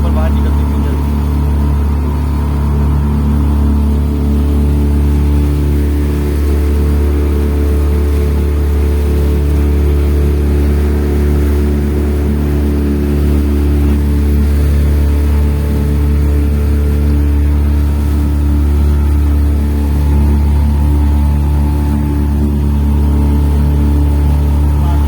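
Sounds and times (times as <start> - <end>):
motorboat engine running: 0.0 - 25.0.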